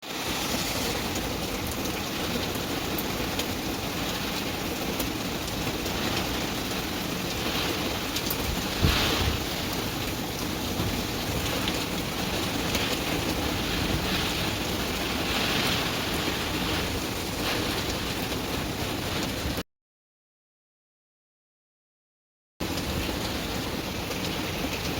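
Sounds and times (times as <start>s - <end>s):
heavy rain pouring: 0.0s - 19.6s, 22.6s - 24.9s
wind gusts: 0.0s - 19.6s.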